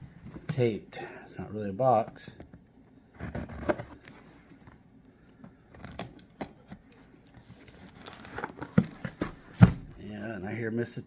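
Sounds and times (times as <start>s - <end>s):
cardboard package being opened: 5.7s - 9.2s.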